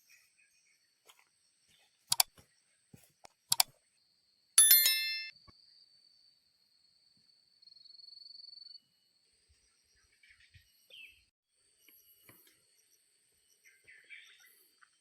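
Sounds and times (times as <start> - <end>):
sharp double clicks: 2.1 - 2.3
small bell ring: 4.6 - 5.4.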